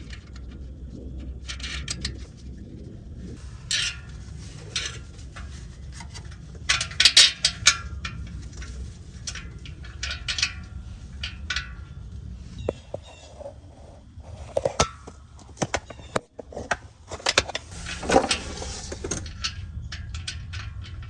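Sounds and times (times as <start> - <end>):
metal tools clinking and rattling: 6.7 - 7.9, 17.3 - 21.0.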